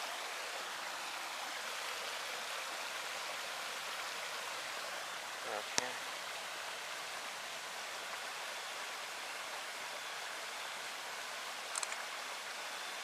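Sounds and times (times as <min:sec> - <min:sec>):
creek water rushing over dam: 0:00.0 - 0:13.0
short clicks: 0:11.7 - 0:12.0.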